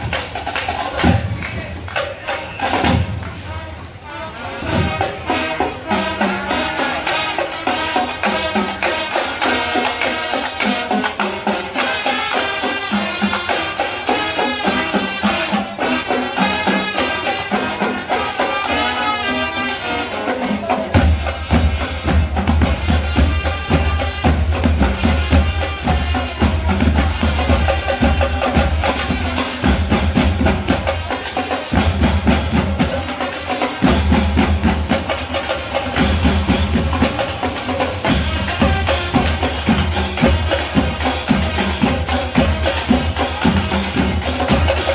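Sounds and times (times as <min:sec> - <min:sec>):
marching band music: 0:00.0 - 0:44.9
heavy bass drum beat: 0:20.8 - 0:44.9.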